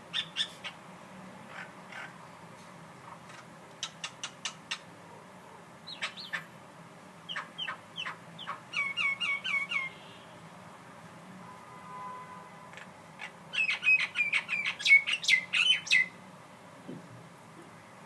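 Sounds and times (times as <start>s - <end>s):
bird calling: 7.3s - 10.0s, 12.8s - 16.2s.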